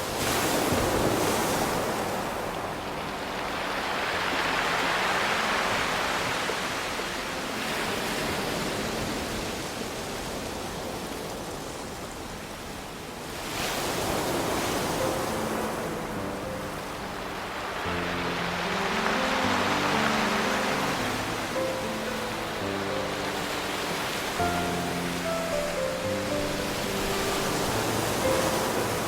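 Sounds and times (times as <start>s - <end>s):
waves washing on pebble beach: 0.0s - 29.0s
faint soft music notes: 12.9s - 29.0s.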